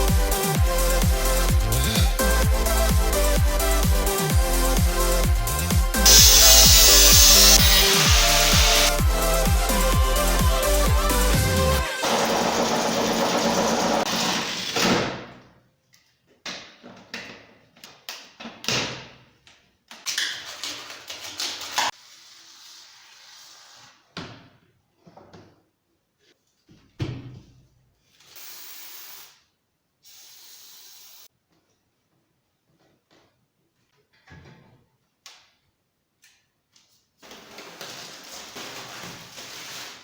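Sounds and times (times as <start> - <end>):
short hissing bursts: 6.0 - 9.0, 28.2 - 31.3
loud steady noise: 6.0 - 14.0.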